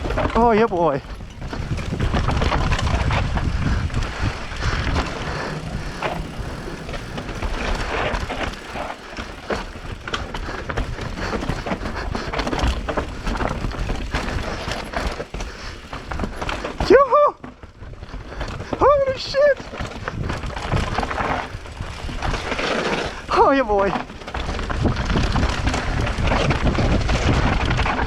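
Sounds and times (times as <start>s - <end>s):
bike rattling and knocking: 0.0s - 28.0s
bike tyres rolling over rough ground: 0.0s - 28.0s
low microphone rumble: 1.0s - 8.8s.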